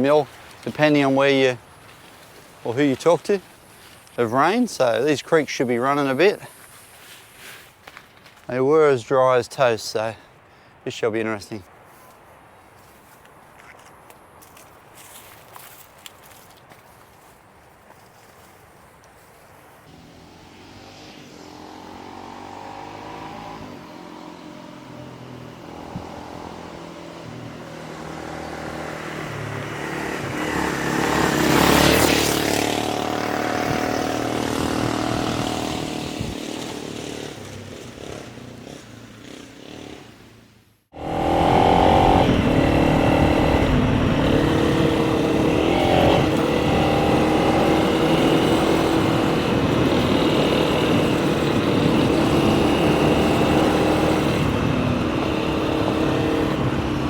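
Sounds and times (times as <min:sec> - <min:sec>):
motorcycle engine: 0:19.9 - 0:57.0.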